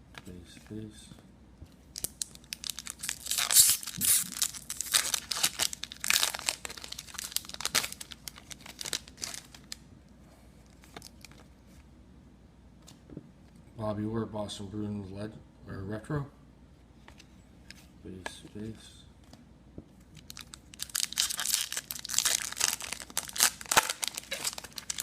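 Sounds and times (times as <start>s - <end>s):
wrapper tearing and crinkling: 2.0s - 9.8s, 20.2s - 25.0s.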